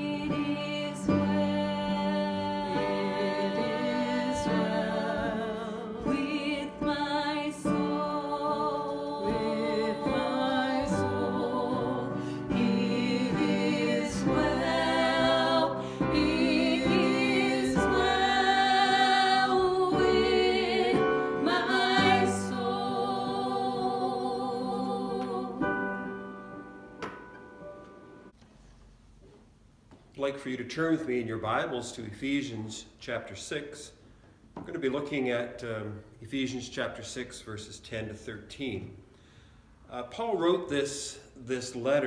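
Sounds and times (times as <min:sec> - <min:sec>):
worship song with instruments: 0:00.0 - 0:29.0, 0:35.6 - 0:42.0.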